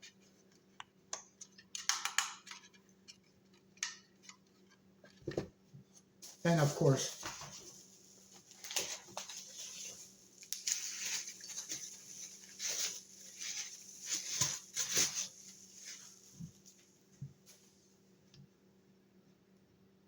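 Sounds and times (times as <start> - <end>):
rustling of packaging: 6.2 - 17.8.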